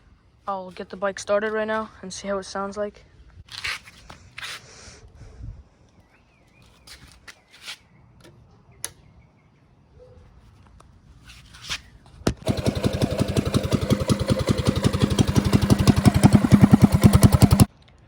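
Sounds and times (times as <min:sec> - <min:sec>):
mini bike engine starting and running: 0:12.3 - 0:17.7.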